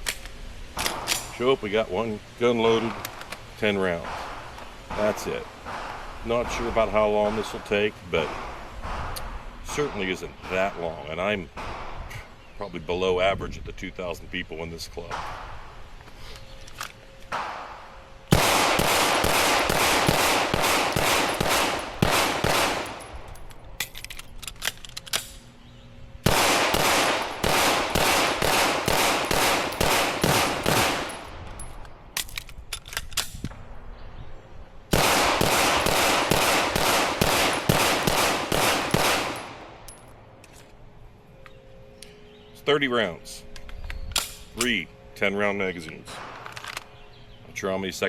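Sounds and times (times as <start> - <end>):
magazine change clicks: 0.0 - 1.3, 18.3 - 25.5, 26.3 - 33.6, 43.5 - 44.8, 45.9 - 47.1
rapid gunshots: 18.3 - 23.0, 26.3 - 31.2, 34.9 - 39.6.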